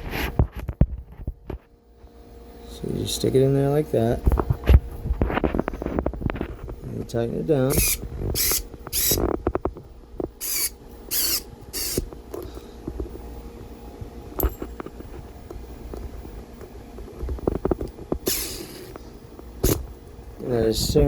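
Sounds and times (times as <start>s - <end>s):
screwdriver ticking and scraping: 7.7s - 9.6s, 10.4s - 12.5s, 17.5s - 19.0s.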